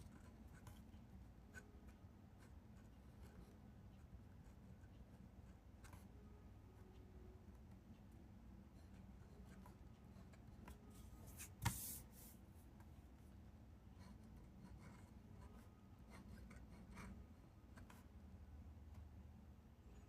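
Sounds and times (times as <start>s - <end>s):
pen scratching on paper: 11.3s - 12.3s.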